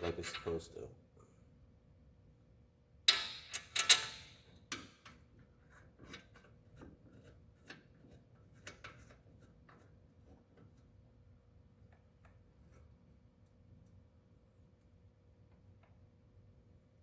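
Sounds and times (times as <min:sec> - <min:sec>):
light ticks and taps of parts: 0:04.7 - 0:11.0, 0:11.8 - 0:14.0, 0:14.8 - 0:16.1.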